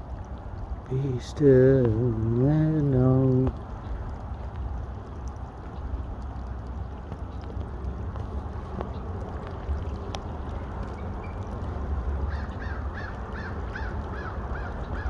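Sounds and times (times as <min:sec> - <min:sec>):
bird calling: 0:12.3 - 0:15.0.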